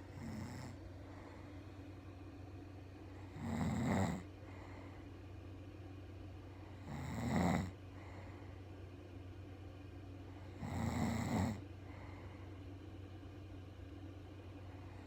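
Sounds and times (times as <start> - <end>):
woman snoring: 0.0 - 0.8, 3.2 - 4.3, 6.8 - 7.8, 10.5 - 11.6
steady low hum: 0.0 - 15.0.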